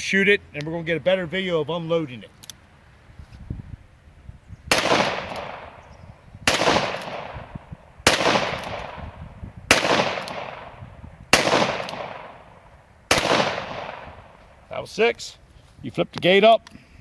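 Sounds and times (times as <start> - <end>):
revolver shots echoing: 4.7 - 14.4.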